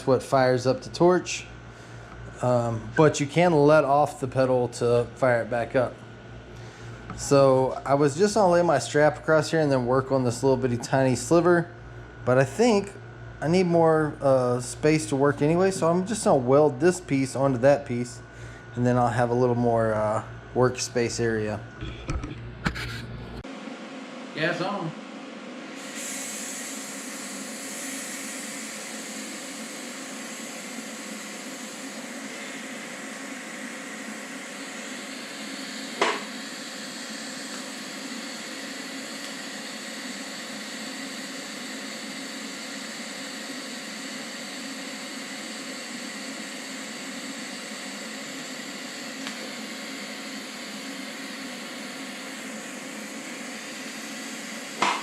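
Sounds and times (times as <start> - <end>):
welding torch hissing: 25.7 - 55.0.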